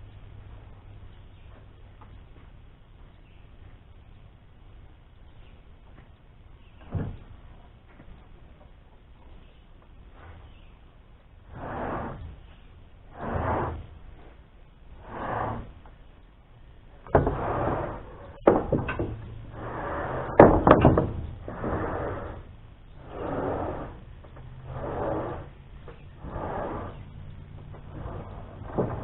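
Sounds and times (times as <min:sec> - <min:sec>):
wooden boards knocking: 0:18.4 - 0:19.3, 0:20.3 - 0:21.3.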